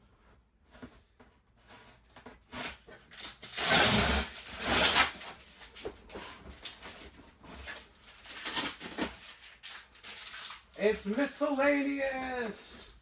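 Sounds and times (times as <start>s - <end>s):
cardboard box tape tearing: 2.5s - 5.4s.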